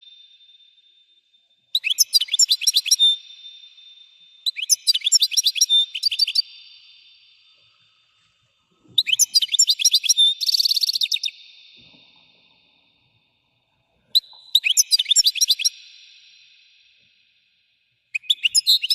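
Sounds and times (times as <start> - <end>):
goldfinch twittering song: 1.7 - 7.2, 9.0 - 11.5, 14.2 - 16.3, 18.2 - 18.9.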